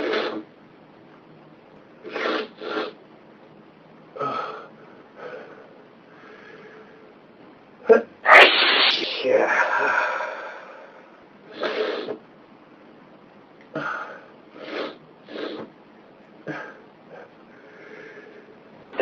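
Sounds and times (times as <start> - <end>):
person sniffing and gasping: 8.3 - 12.2.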